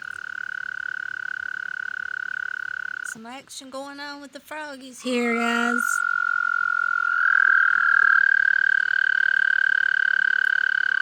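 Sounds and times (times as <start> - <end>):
toad trilling: 5.0 - 11.0.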